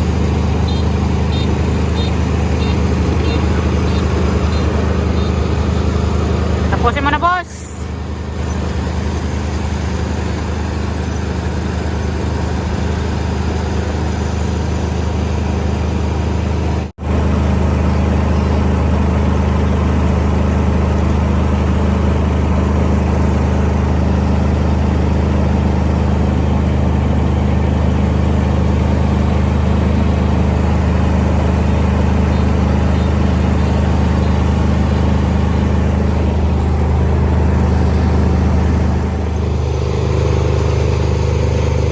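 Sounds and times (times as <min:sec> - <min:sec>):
diesel engine running under load: 0:00.0 - 0:41.9.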